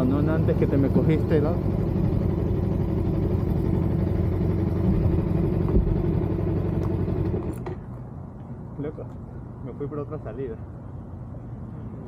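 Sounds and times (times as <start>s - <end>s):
motorcycle engine drone: 0.0s - 8.0s.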